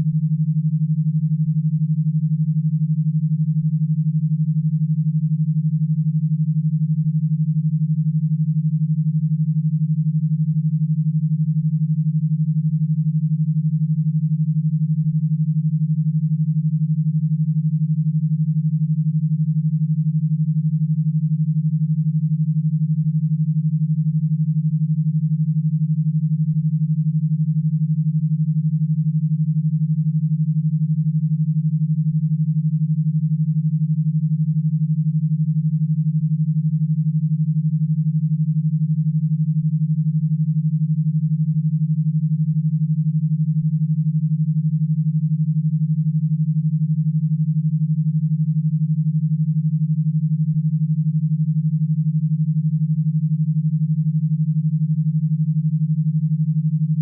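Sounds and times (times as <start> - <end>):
pulsed low synthetic tone: 53.9 - 57.0.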